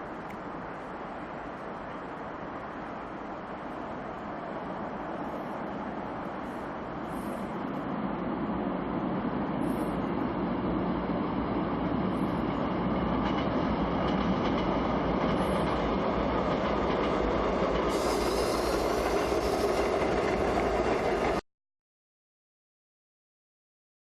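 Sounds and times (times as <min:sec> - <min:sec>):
subway train running on track: 0:00.0 - 0:21.4.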